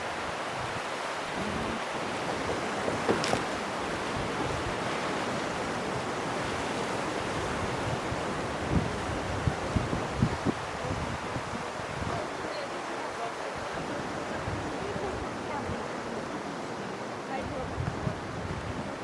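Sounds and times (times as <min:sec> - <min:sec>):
wind buffeting microphone: 0:00.0 - 0:12.5, 0:17.4 - 0:19.0
mountain river rushing: 0:00.0 - 0:19.0.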